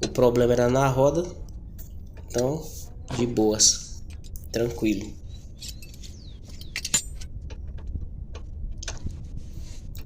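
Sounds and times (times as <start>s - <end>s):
metal tools clinking: 5.6s - 7.3s
ringing metal clink: 6.6s - 7.2s.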